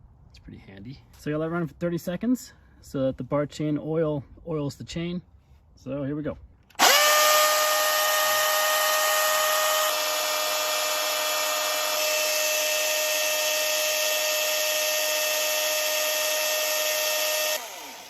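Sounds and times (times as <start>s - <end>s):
battery chainsaw whining: 6.7s - 18.0s.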